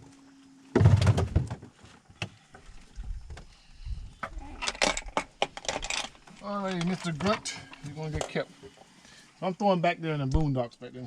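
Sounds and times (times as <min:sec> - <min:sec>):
loud thump: 0:00.8 - 0:01.6.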